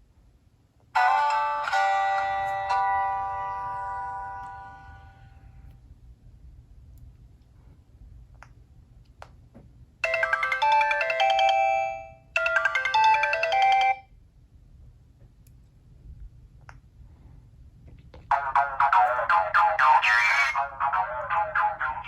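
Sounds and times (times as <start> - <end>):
polyphonic ringtone melody: 1.0 - 5.3, 10.0 - 14.0.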